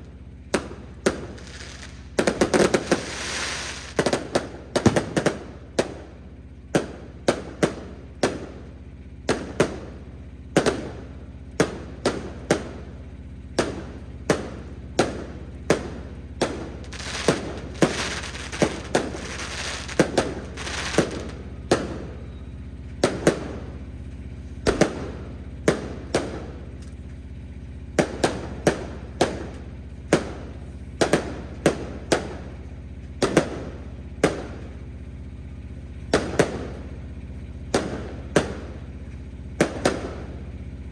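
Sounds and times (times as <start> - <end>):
fireworks crackling: 0.4 - 26.9
fireworks bangs: 0.5 - 8.7, 9.3 - 23.8, 24.6 - 26.7, 33.2 - 34.9, 36.0 - 37.1, 37.7 - 39.0, 39.6 - 40.5.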